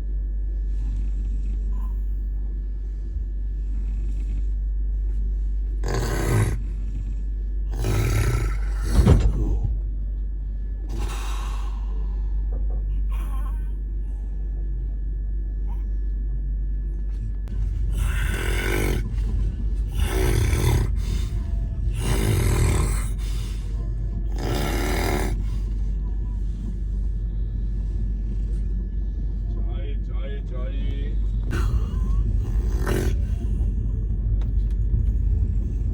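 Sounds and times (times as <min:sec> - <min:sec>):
low rumble of moving train: 0:00.0 - 0:35.9
person snoring: 0:00.6 - 0:04.7, 0:05.3 - 0:09.8, 0:10.9 - 0:12.3, 0:13.0 - 0:13.8, 0:17.5 - 0:26.5, 0:31.5 - 0:33.8.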